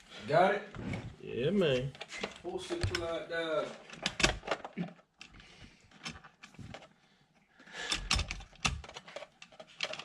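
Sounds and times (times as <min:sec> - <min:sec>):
hands and tools clicking and knocking: 0:01.7 - 0:03.2, 0:03.8 - 0:10.0.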